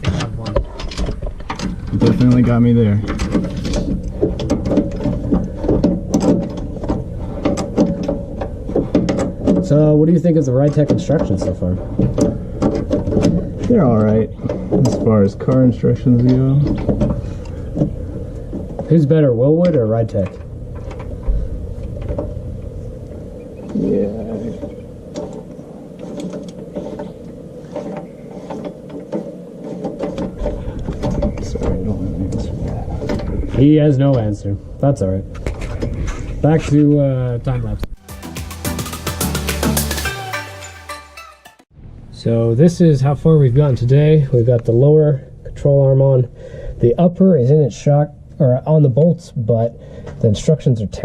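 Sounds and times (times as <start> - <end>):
steady low hum: 0.0 - 40.0.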